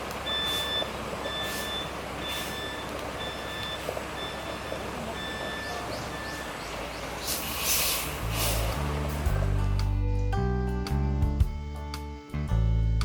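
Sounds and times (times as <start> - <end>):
low engine rumble: 0.0 - 13.0
vehicle reversing alarm beeping: 0.2 - 8.8
burst of hiss: 7.2 - 9.2.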